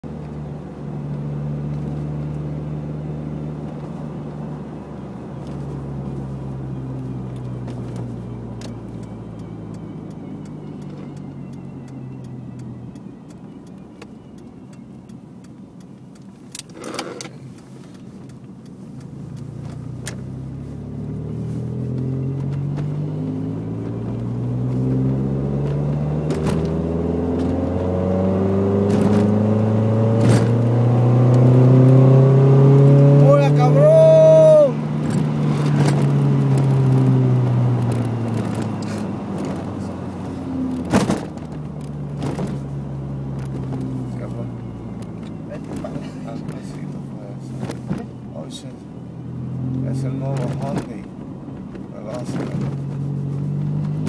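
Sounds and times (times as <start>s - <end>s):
car whine: 0.0s - 54.0s
car engine revving: 16.5s - 54.0s.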